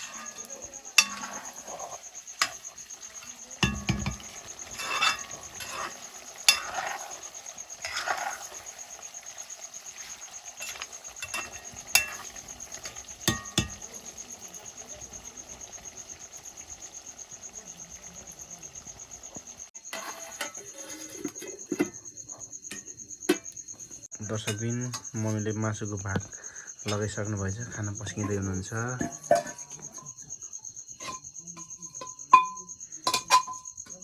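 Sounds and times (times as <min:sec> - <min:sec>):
dishes clinking: 0:00.0 - 0:07.2, 0:10.6 - 0:14.4, 0:19.9 - 0:22.1, 0:24.2 - 0:25.4, 0:28.2 - 0:30.2, 0:31.0 - 0:34.0
insect trill: 0:00.0 - 0:34.0.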